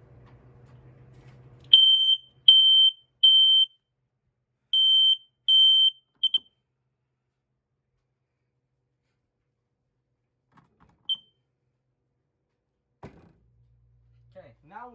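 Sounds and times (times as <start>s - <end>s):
smoke alarm beeping: 1.7s - 3.8s, 4.8s - 6.5s.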